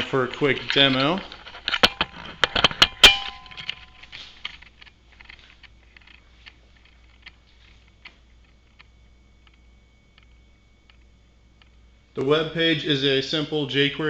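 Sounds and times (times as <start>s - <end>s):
brief metallic ring: 2.8s - 4.1s.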